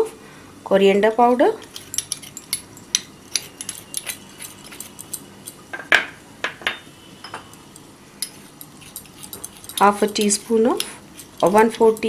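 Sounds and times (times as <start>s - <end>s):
teaspoon clinking against bowl: 1.6s - 5.6s, 7.2s - 12.0s.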